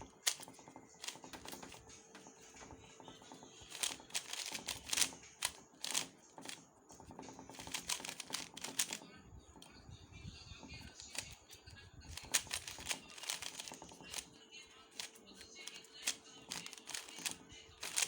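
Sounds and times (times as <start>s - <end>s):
puzzle cube plastic clicking: 0.0s - 2.4s, 3.0s - 6.7s, 7.5s - 9.0s, 10.9s - 18.0s.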